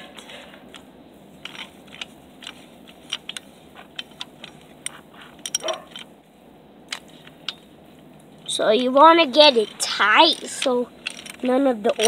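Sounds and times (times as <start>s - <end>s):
hand tool tightening bolt clicks: 0.7s - 6.1s, 6.9s - 12.0s.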